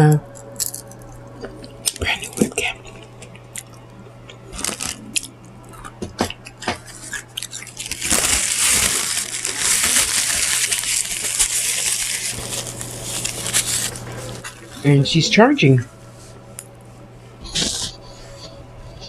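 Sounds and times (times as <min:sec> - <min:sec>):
crispy chicken crunching: 0:02.8 - 0:14.8.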